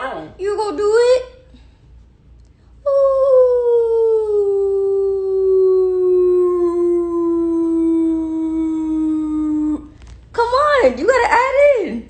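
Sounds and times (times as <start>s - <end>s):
woman imitating dog howl: 2.9s - 9.9s.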